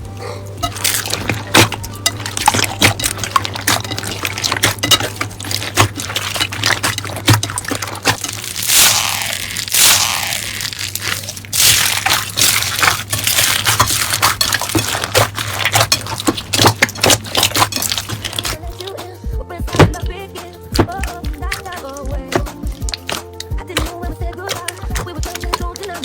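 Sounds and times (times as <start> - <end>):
slime hissing squishes: 0.0 - 18.6, 19.8 - 26.0
slime crackling and popping: 0.6 - 19.0, 19.7 - 26.0.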